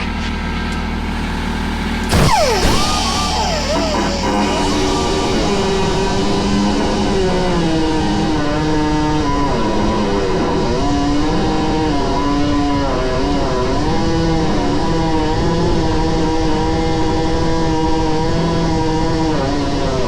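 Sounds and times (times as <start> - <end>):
power cutting tool bogging under load: 1.0 - 9.4.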